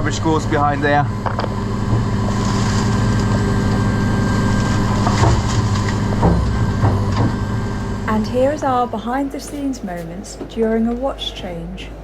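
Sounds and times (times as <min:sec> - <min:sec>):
low machinery hum: 0:00.0 - 0:12.0
rubbish bags rustling: 0:02.0 - 0:07.7, 0:08.3 - 0:10.6.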